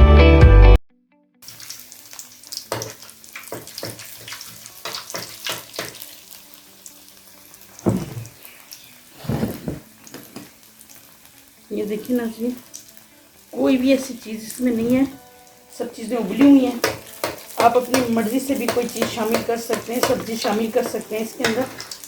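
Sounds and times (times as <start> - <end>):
guitar music: 0.0 - 3.4, 9.0 - 22.0
food sizzling in hot oil: 1.4 - 22.0
dull thuds: 7.8 - 8.3.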